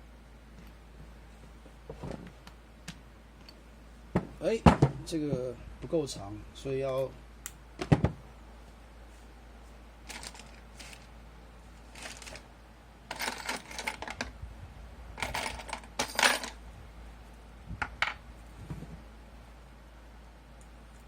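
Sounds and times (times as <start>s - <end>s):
metal parts clinking: 10.1s - 11.1s, 11.9s - 12.4s, 13.1s - 14.3s, 15.2s - 16.6s.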